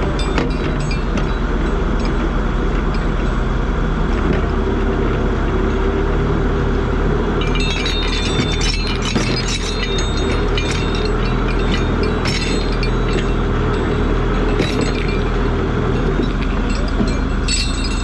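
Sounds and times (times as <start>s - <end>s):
metal clinking and squeaking: 0.0s - 3.5s, 7.4s - 18.0s
diesel engine running: 0.0s - 18.0s.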